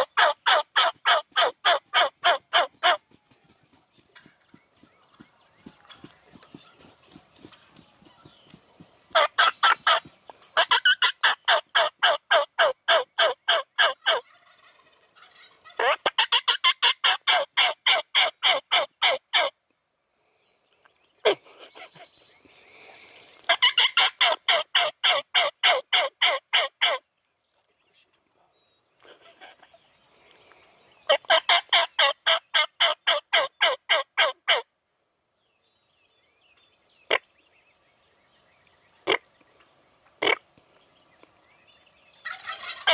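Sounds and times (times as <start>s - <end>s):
turkey yelps: 0.0s - 3.0s, 9.2s - 10.0s, 10.6s - 19.5s, 23.5s - 27.0s, 31.1s - 34.6s, 42.2s - 42.9s.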